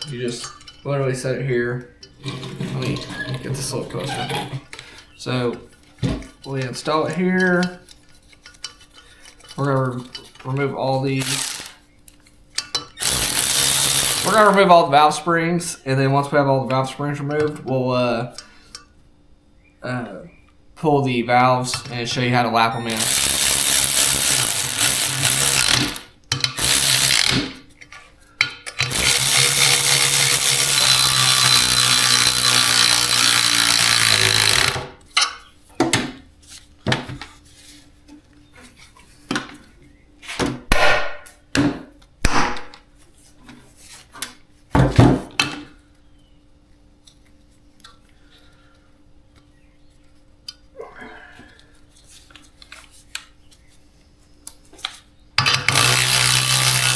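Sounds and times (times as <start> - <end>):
power tool running: 11.2 - 11.8, 13.0 - 14.6, 22.9 - 27.6, 28.8 - 34.9, 55.6 - 56.9.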